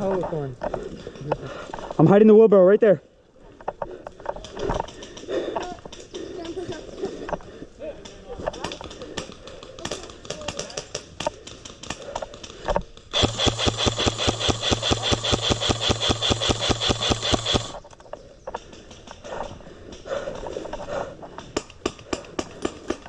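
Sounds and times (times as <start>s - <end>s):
airsoft gun full-auto burst: 13.1s - 17.8s
gearbox motor whine: 13.2s - 17.8s.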